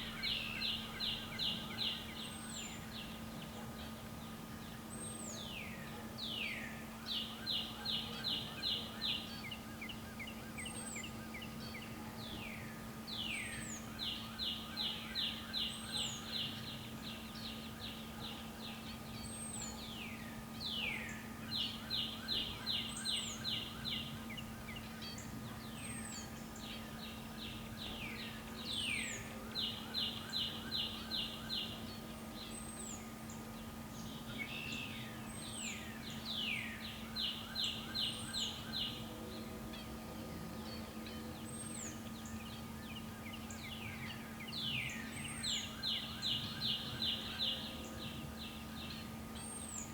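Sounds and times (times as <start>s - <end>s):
songbird singing: 0.0s - 49.9s
steady low hum: 0.0s - 49.9s.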